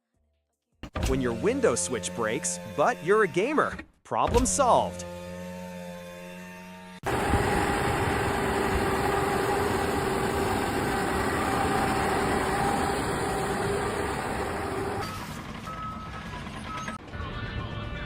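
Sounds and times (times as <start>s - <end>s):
engine running with hum: 5.0s - 18.0s.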